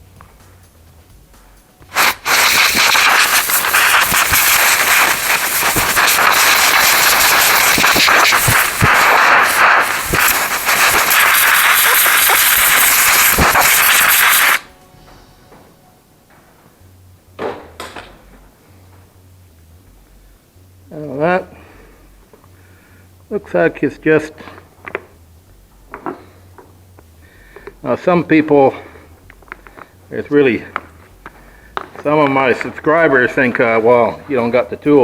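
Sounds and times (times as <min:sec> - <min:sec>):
compressed air hissing: 0:01.6 - 0:15.4, 0:25.9 - 0:34.2.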